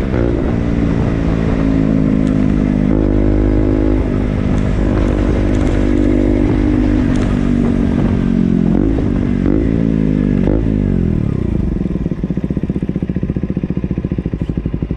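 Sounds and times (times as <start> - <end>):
motorcycle engine revving and idling: 0.0 - 14.9.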